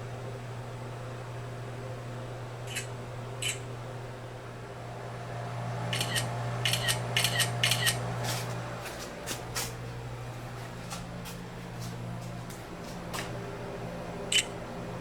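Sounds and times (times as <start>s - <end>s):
steady low hum: 0.0s - 15.0s
camera shutter clicking: 2.7s - 3.6s, 5.9s - 8.0s.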